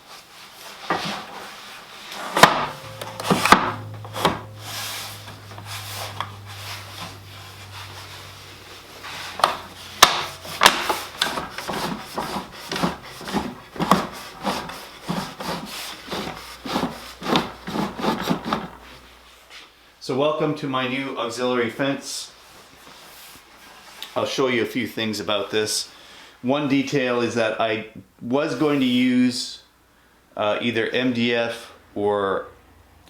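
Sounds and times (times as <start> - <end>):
low steady hum: 2.4 - 13.8
wooden boards knocking and rubbing: 9.3 - 19.0.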